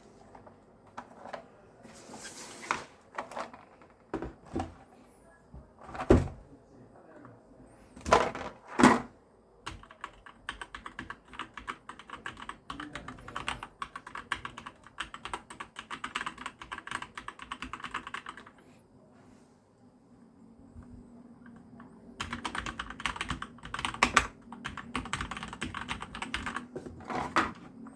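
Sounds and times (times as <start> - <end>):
mechanical keyboard typing: 9.7 - 18.6, 21.4 - 26.8.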